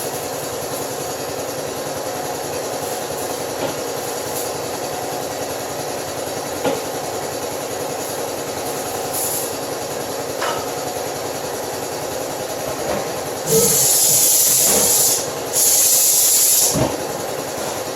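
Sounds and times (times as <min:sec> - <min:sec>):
machine running: 0:13.3 - 0:16.8.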